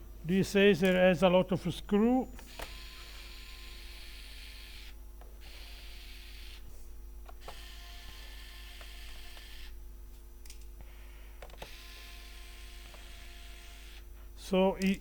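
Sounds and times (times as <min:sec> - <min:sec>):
electric screwdriver whirring: 0:02.4 - 0:06.6, 0:07.3 - 0:09.8, 0:11.5 - 0:14.0.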